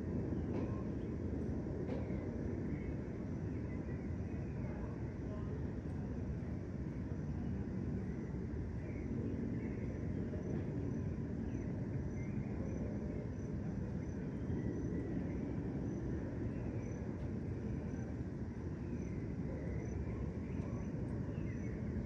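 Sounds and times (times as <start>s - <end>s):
distant city traffic rumble: 0.0s - 22.0s
cricket chirping: 6.4s - 22.0s.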